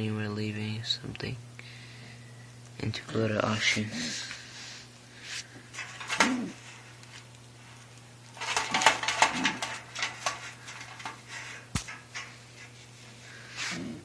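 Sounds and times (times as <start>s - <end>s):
clattering and rustling: 5.7s - 13.1s
pigeons cooing: 6.0s - 6.7s, 13.6s - 14.0s.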